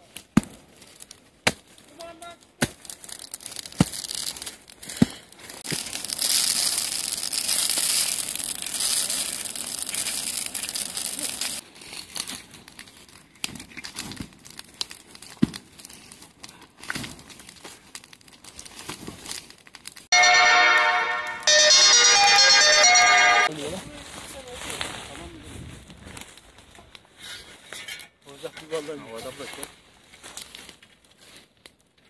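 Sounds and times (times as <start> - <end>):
dry undergrowth crackling: 0.0 - 20.1, 23.4 - 27.7, 28.6 - 32.0.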